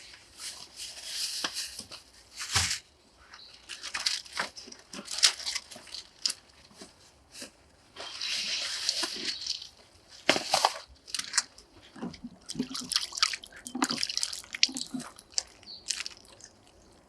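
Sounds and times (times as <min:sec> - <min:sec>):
water splashing in washbasin: 0:12.3 - 0:16.6.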